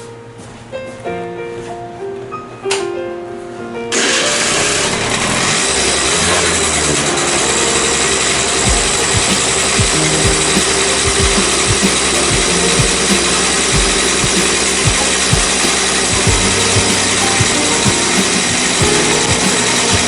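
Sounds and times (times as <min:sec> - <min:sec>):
low thuds: 0:08.7 - 0:20.0.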